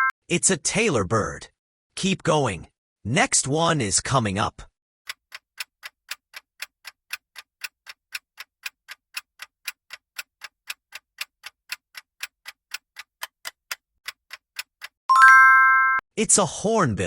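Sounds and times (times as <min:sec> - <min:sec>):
clock ticking: 0:05.1 - 0:15.0.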